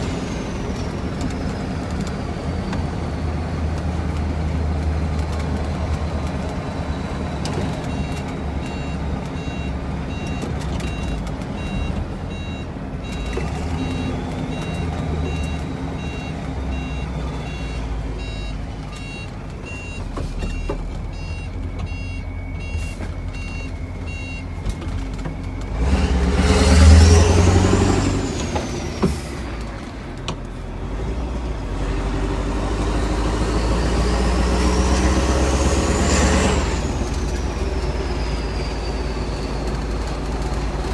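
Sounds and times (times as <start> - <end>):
reversing beeper: 6.8 - 29.0.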